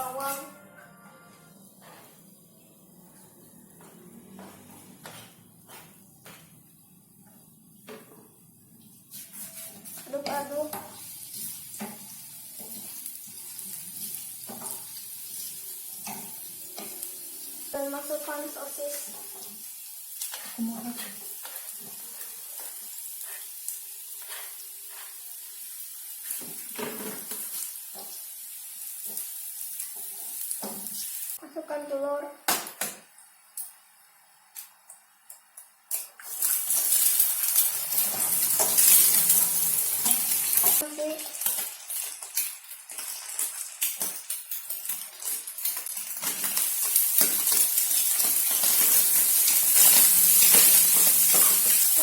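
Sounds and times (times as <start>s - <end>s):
sausage and garlic sizzling in oil: 6.7s - 52.0s
spatula scraping a frying pan: 24.2s - 25.2s.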